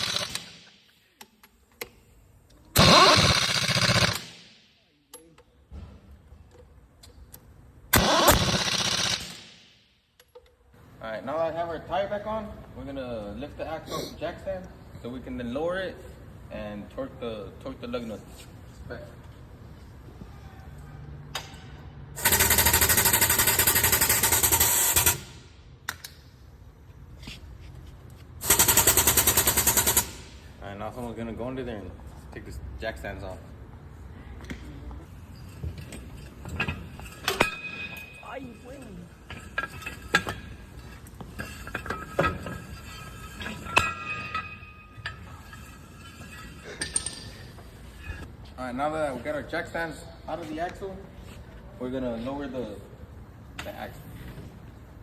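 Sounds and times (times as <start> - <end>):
air tool hammering: 0.0 - 0.7, 2.8 - 4.5, 7.9 - 9.7, 22.2 - 25.4, 28.4 - 30.5.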